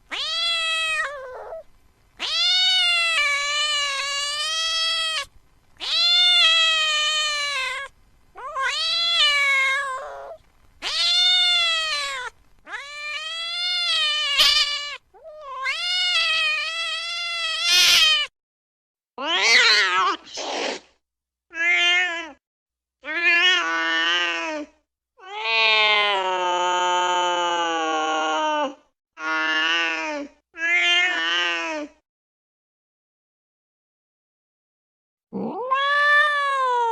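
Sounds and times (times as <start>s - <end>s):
cat meowing: 0.1s - 1.6s, 2.2s - 18.3s, 19.2s - 20.4s, 21.5s - 22.4s, 29.2s - 31.9s, 35.4s - 36.9s.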